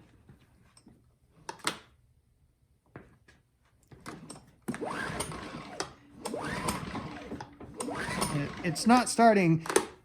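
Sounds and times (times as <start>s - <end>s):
pull-starter engine whir: 4.8s - 9.1s.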